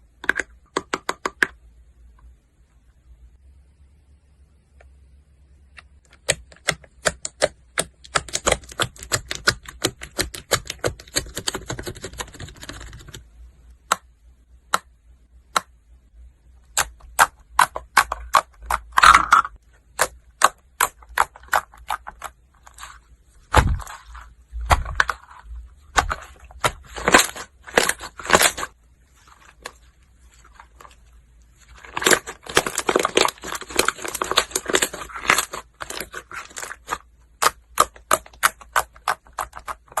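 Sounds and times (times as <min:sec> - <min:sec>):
deeper thumps: 0:23.4 - 0:24.0
slime crackling and popping: 0:25.9 - 0:40.0.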